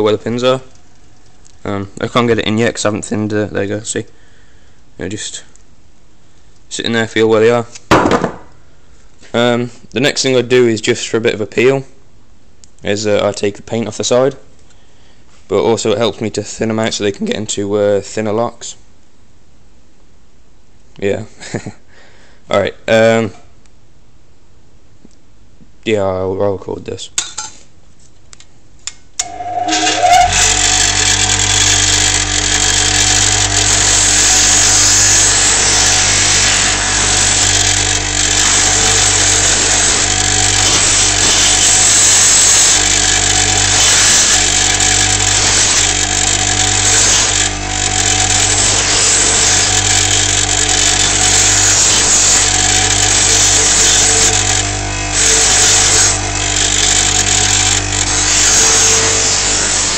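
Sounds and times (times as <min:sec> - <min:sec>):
power tool grinding metal: 0:29.2 - 0:59.9.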